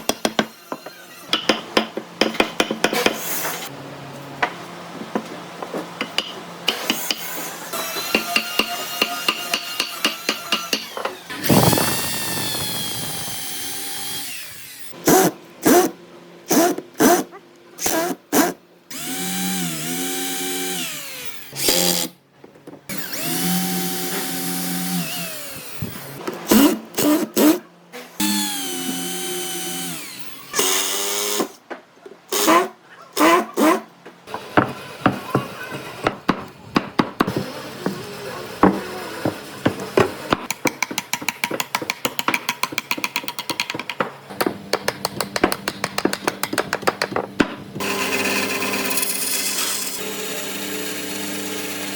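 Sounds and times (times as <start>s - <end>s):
power tool working wood: 10.2s - 15.9s, 16.5s - 22.1s, 22.9s - 27.6s, 28.2s - 31.5s, 47.8s - 51.9s.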